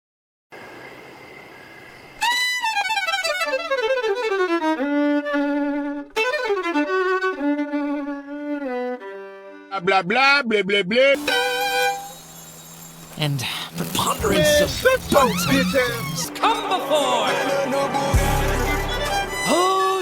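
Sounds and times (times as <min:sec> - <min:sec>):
solo violin slow melody: 0:02.2 - 0:09.7
faint hiss: 0:11.2 - 0:16.3.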